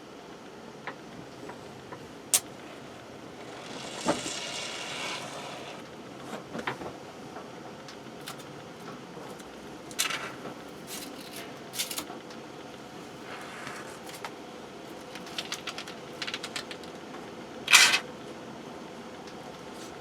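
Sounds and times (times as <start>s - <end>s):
objects being handled: 8.2s - 8.5s, 9.2s - 12.1s, 13.1s - 17.0s.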